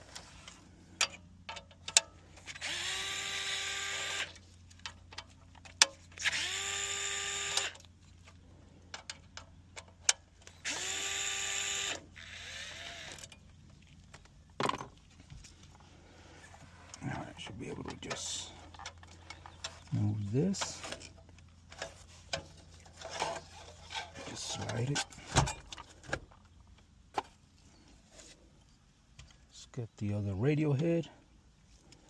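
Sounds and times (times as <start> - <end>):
cordless drill motor spinning: 2.4 - 4.4, 6.2 - 7.9, 10.4 - 13.4.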